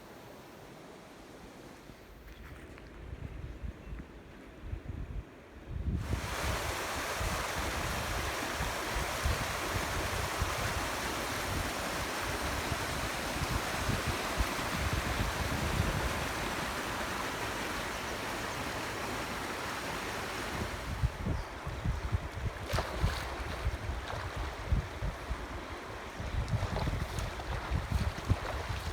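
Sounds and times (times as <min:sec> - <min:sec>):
wind rumbling on microphone: 0:02.2 - 0:28.9
river water rushing: 0:06.0 - 0:21.2.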